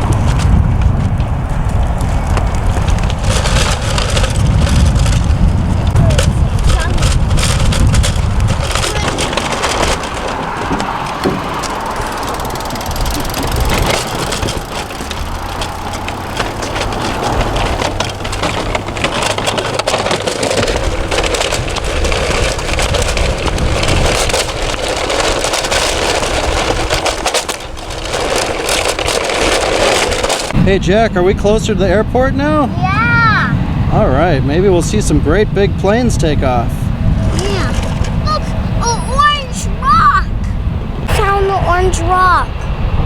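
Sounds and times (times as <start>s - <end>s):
crunching and scraping of gravel: 0.0s - 30.6s.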